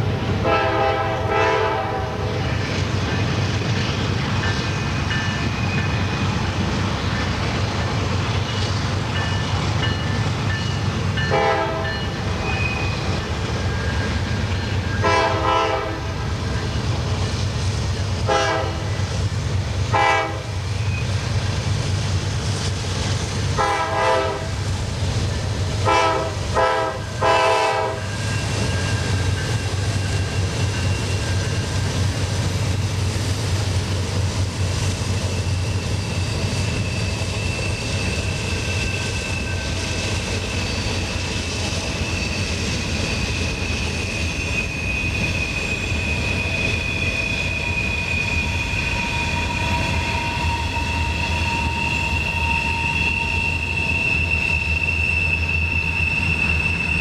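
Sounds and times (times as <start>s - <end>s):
train engine rumble: 0.0s - 57.0s
train air horn chord: 0.4s - 2.3s, 11.3s - 12.1s, 15.0s - 16.2s, 18.3s - 19.0s, 19.9s - 20.6s, 23.6s - 24.6s, 25.8s - 28.0s
wheel flange squeal: 2.3s - 18.2s, 20.6s - 57.0s.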